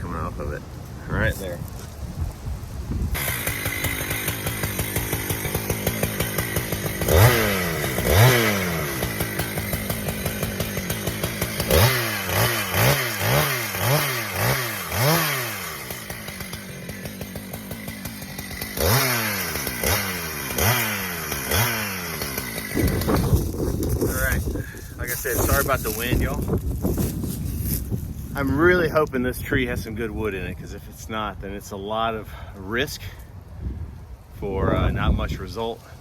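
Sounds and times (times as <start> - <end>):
chainsaw idling and revving: 3.1 - 29.0.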